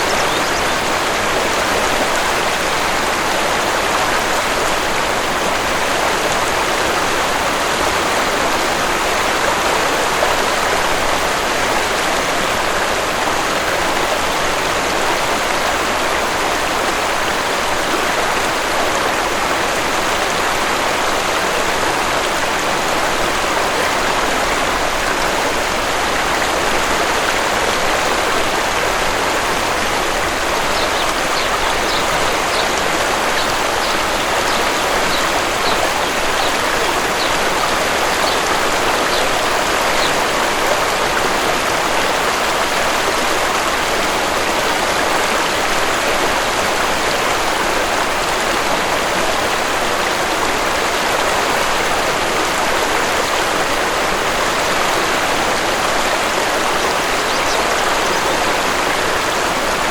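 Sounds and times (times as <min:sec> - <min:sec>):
bird chirping: 0:00.0 - 0:00.8, 0:30.6 - 0:37.4, 0:57.2 - 0:58.3
waterfall rushing: 0:00.0 - 0:59.9.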